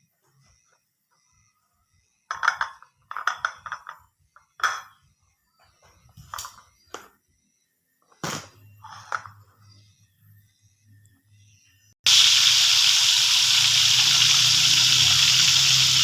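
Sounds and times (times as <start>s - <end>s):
dishes clinking and knocking: 2.3s - 5.0s.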